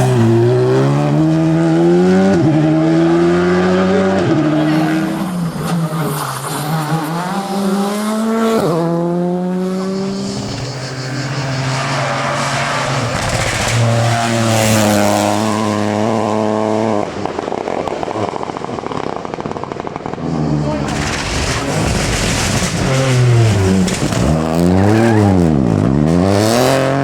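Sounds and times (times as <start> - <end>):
rally car engine revving: 0.0 - 27.0
rough rumbling noise: 10.4 - 26.0
tyres squealing: 20.6 - 25.7.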